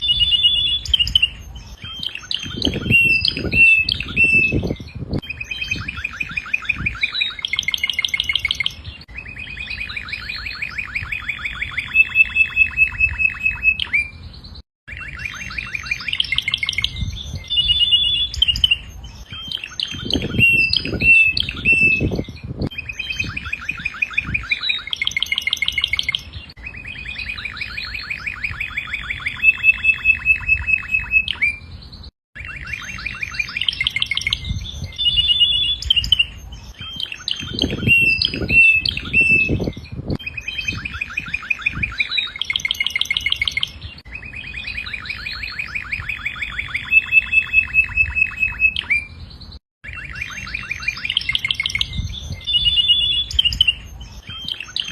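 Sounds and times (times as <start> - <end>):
canary singing trills: 0.0 - 54.9.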